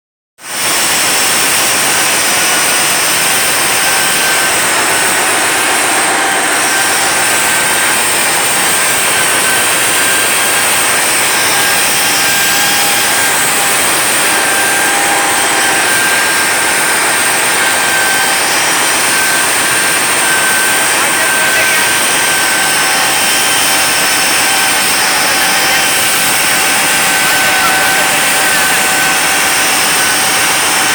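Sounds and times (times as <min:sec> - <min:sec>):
grinding machine hissing: 0:00.4 - 0:30.9
high-pitched machine whine: 0:00.4 - 0:30.9.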